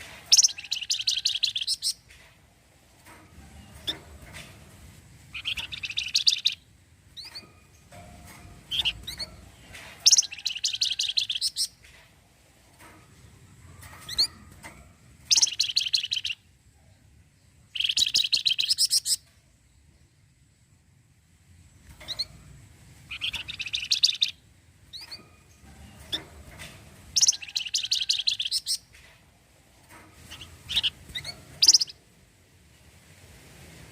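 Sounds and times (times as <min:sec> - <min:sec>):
songbird rattling chatter: 0:05.3 - 0:11.9, 0:23.1 - 0:25.4, 0:26.0 - 0:29.0, 0:30.2 - 0:32.0.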